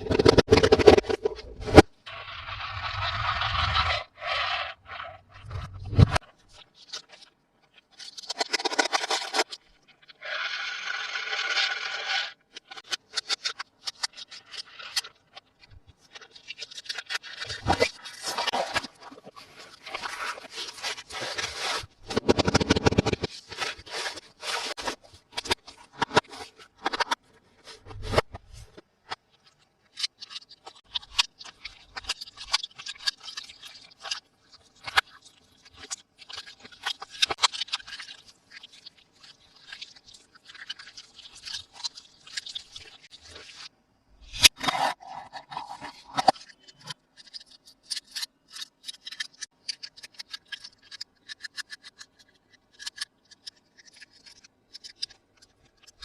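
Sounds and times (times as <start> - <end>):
toy packaging rustling: 8.0 - 9.6, 16.2 - 28.3.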